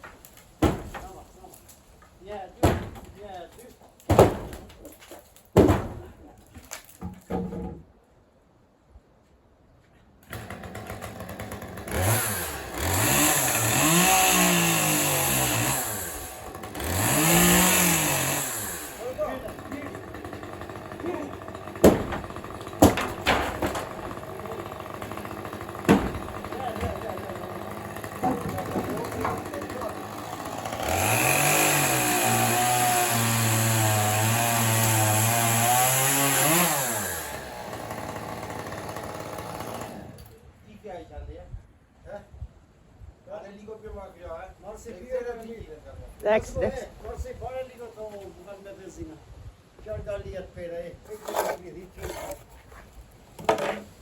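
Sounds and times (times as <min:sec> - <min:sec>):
chainsaw engine revving: 0:10.3 - 0:40.3.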